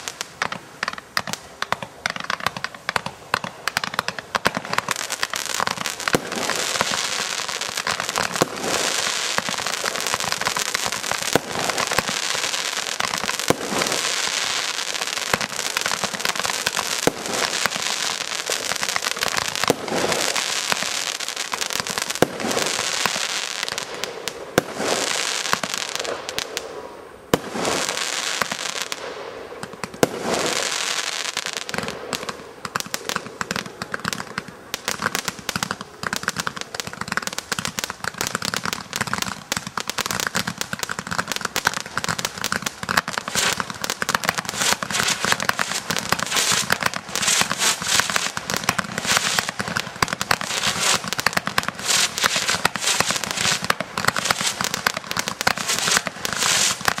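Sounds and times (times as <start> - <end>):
fireworks bangs and crackling: 0.0 - 57.0.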